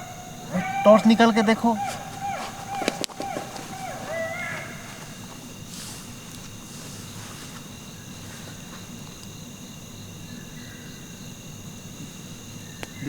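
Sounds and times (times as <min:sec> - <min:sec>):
crickets chirring: 0:00.0 - 0:13.0.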